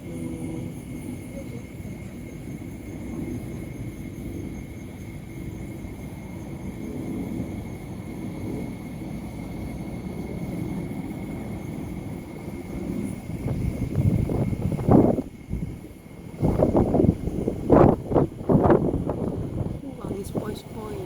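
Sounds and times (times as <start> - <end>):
low outdoor rumble: 11.6 - 21.0.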